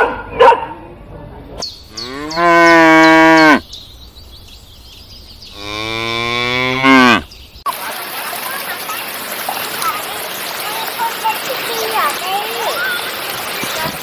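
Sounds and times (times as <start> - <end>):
cow mooing: 1.9 - 3.6, 5.6 - 7.3.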